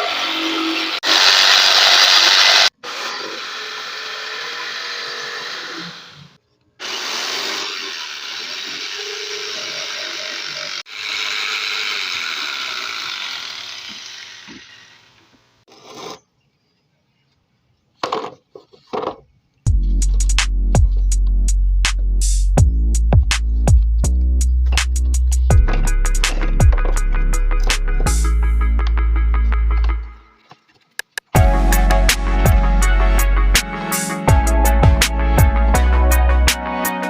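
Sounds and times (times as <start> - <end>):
electric jigsaw cutting: 0.0 - 15.2.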